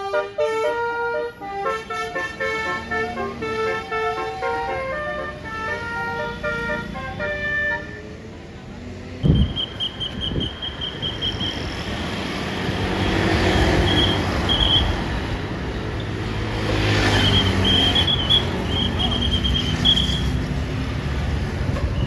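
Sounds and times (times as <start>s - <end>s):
road traffic: 0.0s - 22.0s
large vehicle passing: 10.8s - 21.8s.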